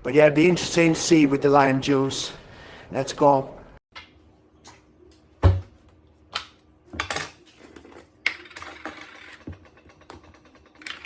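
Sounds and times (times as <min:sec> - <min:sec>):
utensils and dishes clinking: 0:07.0 - 0:11.0.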